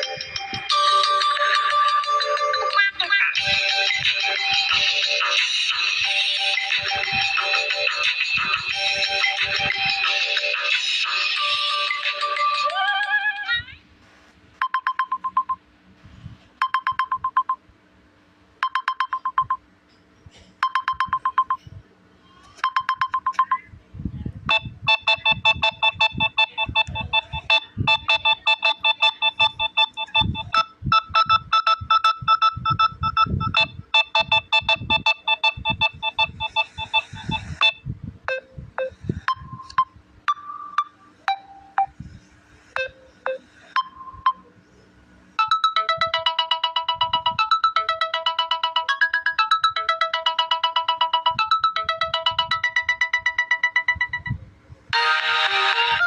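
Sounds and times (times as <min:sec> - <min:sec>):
sparse ringtone tune: 0:00.0 - 0:12.7, 0:14.6 - 0:15.6, 0:16.6 - 0:17.6, 0:18.6 - 0:19.6, 0:20.6 - 0:21.6, 0:22.6 - 0:23.6, 0:24.5 - 0:42.0, 0:42.7 - 0:44.5, 0:45.4 - 0:54.4
electronic ringtone melody with beat: 0:00.0 - 0:13.2, 0:14.6 - 0:15.6, 0:16.6 - 0:17.6, 0:18.6 - 0:19.6, 0:20.6 - 0:21.6, 0:22.6 - 0:23.6, 0:24.5 - 0:42.0, 0:42.8 - 0:44.5, 0:45.4 - 0:54.4, 0:55.0 - 0:56.0.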